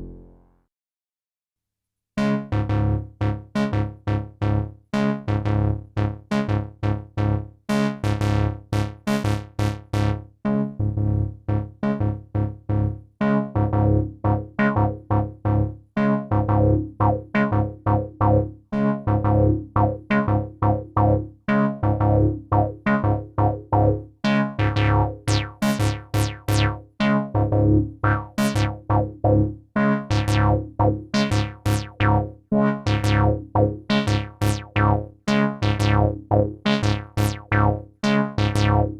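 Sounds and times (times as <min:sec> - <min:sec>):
synthesizer bass sequence: 0:00.0 - 0:00.6, 0:24.6 - 0:38.9.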